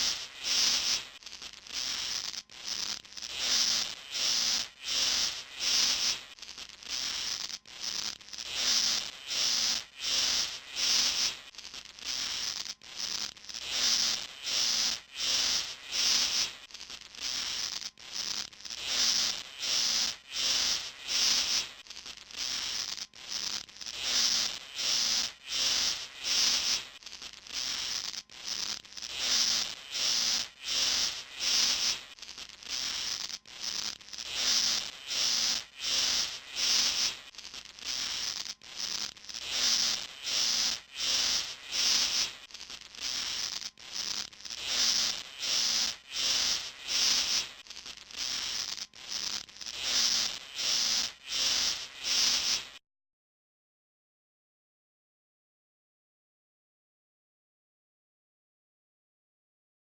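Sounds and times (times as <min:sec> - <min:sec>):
hissy animal chirps: 0:00.0 - 0:01.0, 0:03.2 - 0:06.2, 0:08.5 - 0:11.4, 0:13.6 - 0:16.6, 0:17.2 - 0:21.8, 0:22.4 - 0:52.8.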